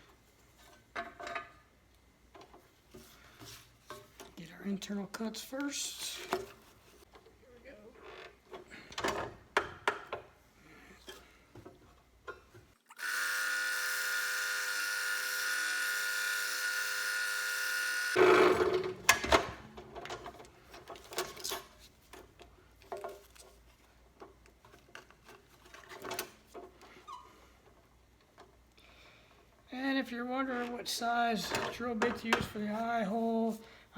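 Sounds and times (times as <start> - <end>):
electric drill boring plywood: 12.9 - 18.7.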